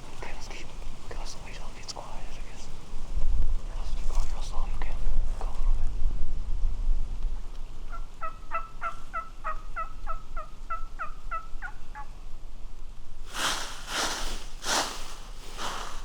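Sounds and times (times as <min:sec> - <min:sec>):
turkey yelps: 0:07.9 - 0:12.1.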